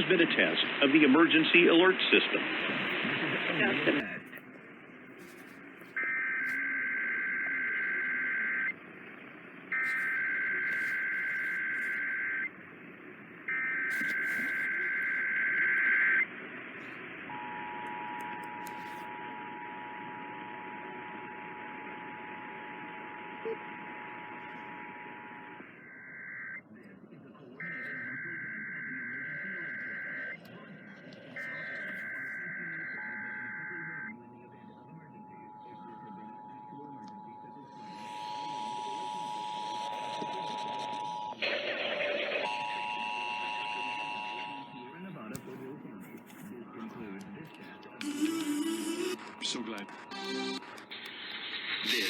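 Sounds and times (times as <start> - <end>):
static hiss: 0.0 - 4.3, 49.0 - 52.0
radio static hiss: 0.0 - 52.0.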